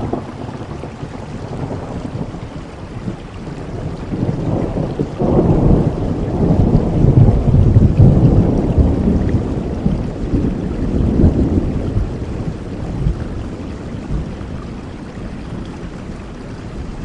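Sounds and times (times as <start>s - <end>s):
steady rain: 0.0s - 17.0s
thunder rumbling: 0.0s - 17.0s.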